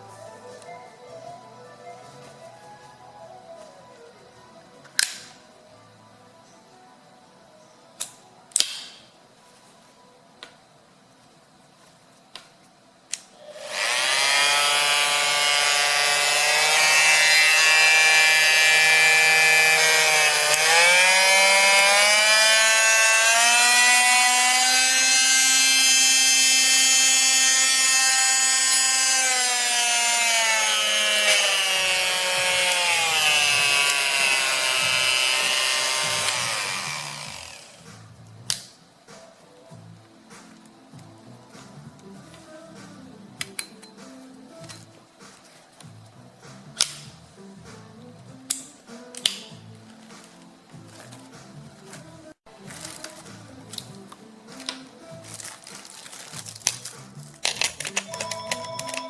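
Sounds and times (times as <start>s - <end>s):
multi-tool buzzing whine: 13.4s - 38.1s.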